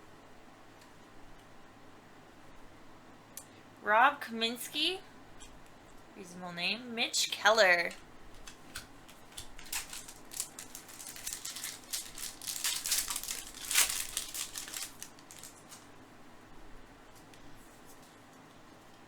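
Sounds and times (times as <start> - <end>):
card pack rustling and crinkling: 8.3 - 16.0.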